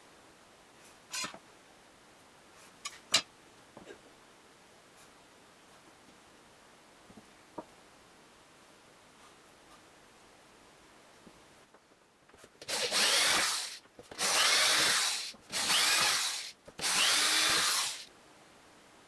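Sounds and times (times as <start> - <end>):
power tool running: 12.6 - 18.1.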